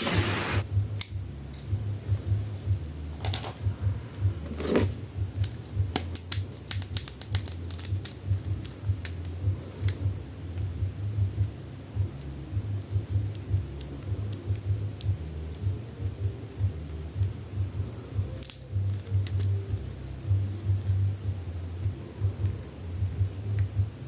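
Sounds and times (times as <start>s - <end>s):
low pulsing hum: 0.0s - 24.0s
plastic clicks and taps: 3.2s - 3.6s, 4.5s - 10.0s.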